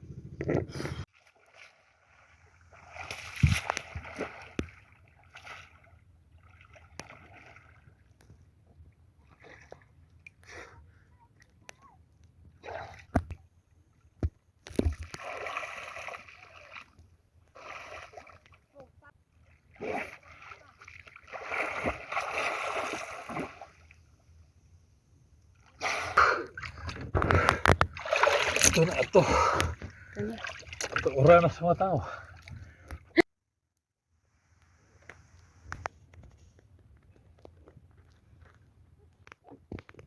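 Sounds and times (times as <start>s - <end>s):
water sloshing and splashing: 1.0s - 10.5s, 12.5s - 24.4s, 25.4s - 33.2s.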